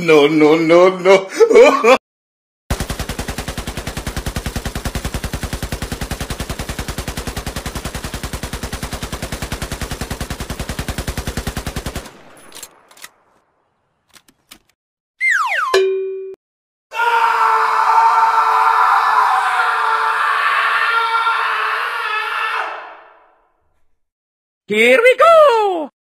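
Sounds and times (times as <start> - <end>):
machine-gun fire: 2.7 - 13.4.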